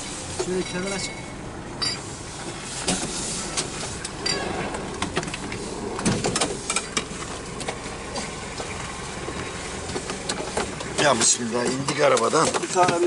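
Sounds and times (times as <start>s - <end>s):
car engine and tyres rumbling: 0.0s - 13.0s
scattered clicks and knocks: 2.8s - 13.0s.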